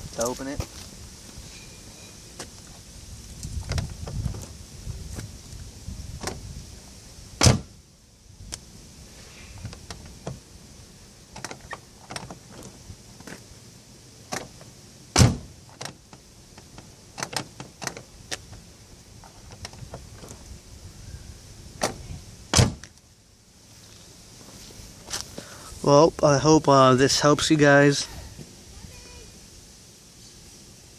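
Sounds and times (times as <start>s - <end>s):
car door latch clicking and rattling: 7.4s - 7.7s, 11.3s - 12.7s, 14.3s - 14.6s, 15.2s - 16.0s, 16.6s - 18.4s, 21.8s - 22.9s
heavy car door clunk: 7.4s - 7.7s, 15.1s - 16.0s, 21.8s - 22.9s.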